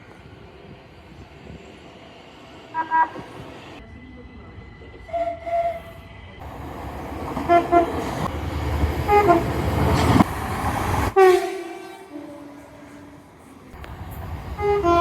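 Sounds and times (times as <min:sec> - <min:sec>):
train rumbling: 0:00.0 - 0:15.0
train horn tooting: 0:07.4 - 0:08.1, 0:09.0 - 0:09.6, 0:11.1 - 0:13.3, 0:14.6 - 0:15.0.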